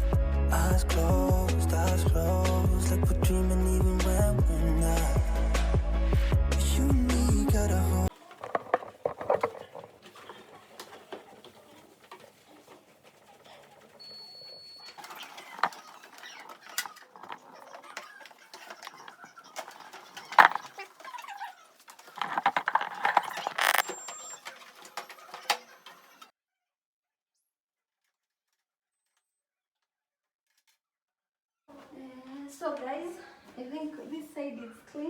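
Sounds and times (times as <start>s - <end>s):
wet towel scrubbing: 8.1s - 23.8s.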